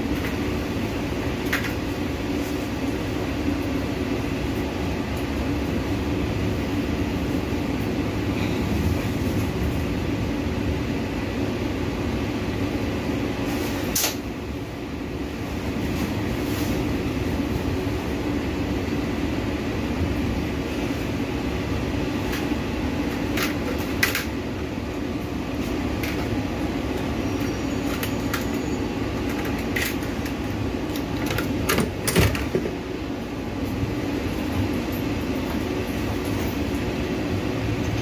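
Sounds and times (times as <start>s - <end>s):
strong wind: 0.0s - 38.0s.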